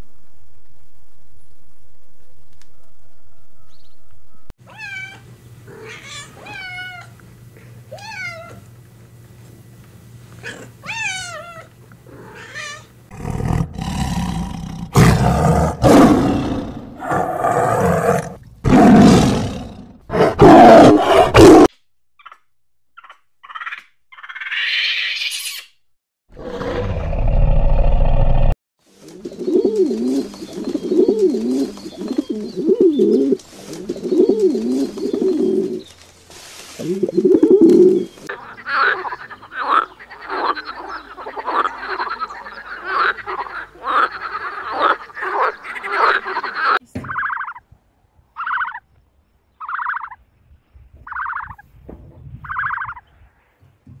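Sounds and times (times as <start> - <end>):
animal roars: 13.1 - 21.7, 26.3 - 28.6.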